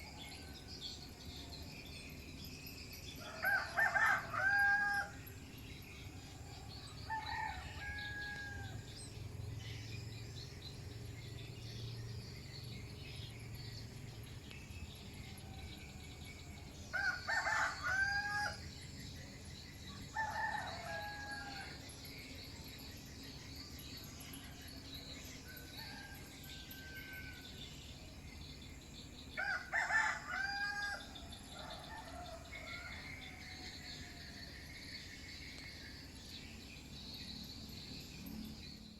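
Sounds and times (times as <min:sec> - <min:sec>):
rooster crowing: 0:03.2 - 0:05.2, 0:06.8 - 0:08.8, 0:16.9 - 0:18.6, 0:20.1 - 0:21.8, 0:29.4 - 0:34.2.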